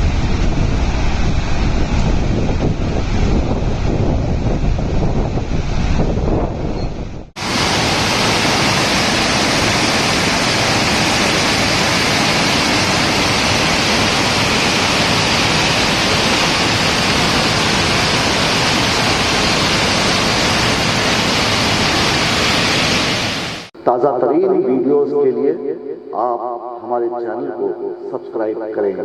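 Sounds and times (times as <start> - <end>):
water rushing through spillway: 7.4 - 23.7.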